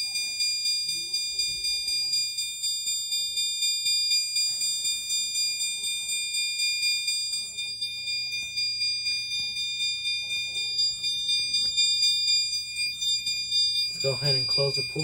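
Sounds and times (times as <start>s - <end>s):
high-pitched electronic alarm chime: 0.0s - 15.0s
steady high ringing tone: 0.0s - 15.0s.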